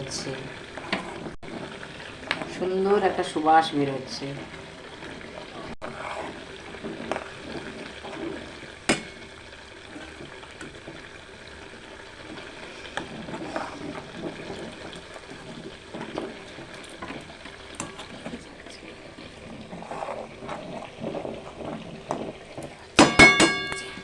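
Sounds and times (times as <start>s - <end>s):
ghee bubbling and sizzling: 0.0s - 24.0s.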